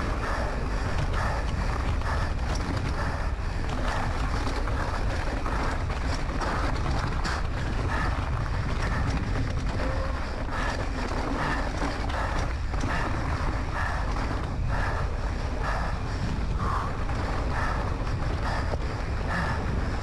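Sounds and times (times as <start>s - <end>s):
wind buffeting microphone: 0.0s - 20.0s
person breathing heavily: 7.9s - 20.0s.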